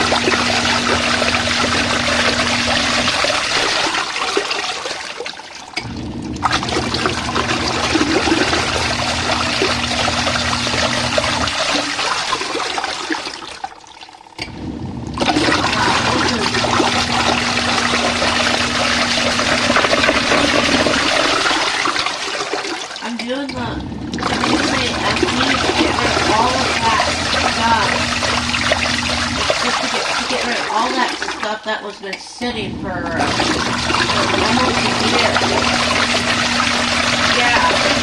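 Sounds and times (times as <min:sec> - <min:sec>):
washing machine motor hum: 0:00.0 - 0:38.0
water sloshing and churning: 0:00.0 - 0:38.0.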